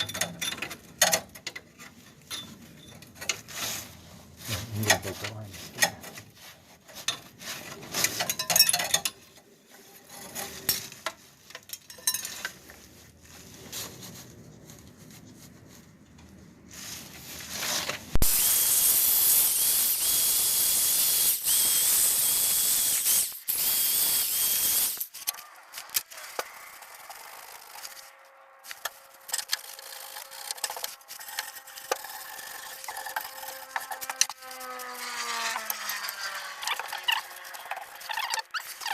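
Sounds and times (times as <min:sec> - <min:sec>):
hand tools clicking and scraping: 0:00.0 - 0:13.2, 0:17.3 - 0:38.9
loud steady hiss: 0:18.2 - 0:25.1.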